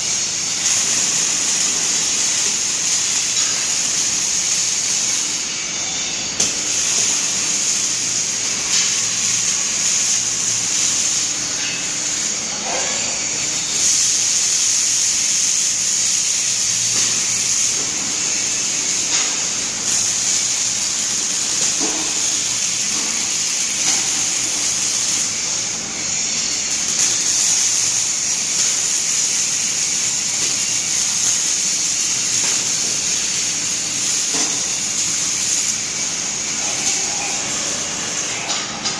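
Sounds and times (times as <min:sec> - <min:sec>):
welding torch hissing: 0:00.0 - 0:38.9.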